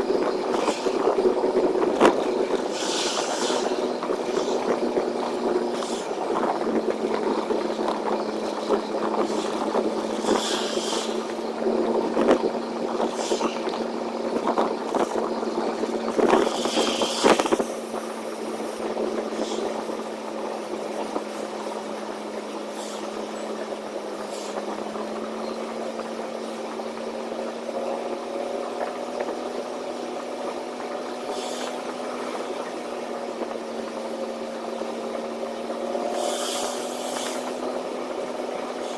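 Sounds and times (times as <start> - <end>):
road noise: 0.0 - 38.9
truck engine drone: 0.0 - 38.9.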